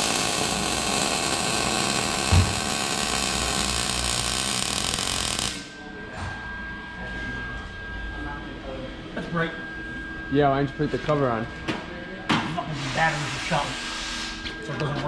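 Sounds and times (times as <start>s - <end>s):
power tool running: 0.0s - 5.7s.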